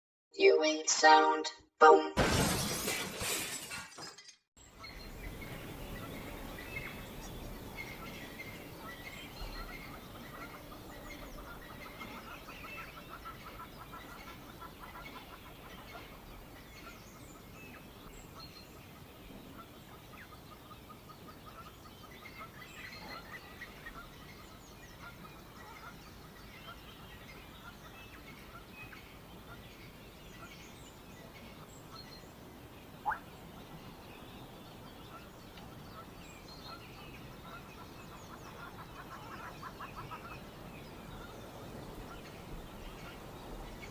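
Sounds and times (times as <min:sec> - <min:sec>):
wind: 0:02.3 - 0:43.9
insects: 0:04.6 - 0:43.9
small birds chirping: 0:04.6 - 0:43.9
bird trill: 0:33.0 - 0:33.3.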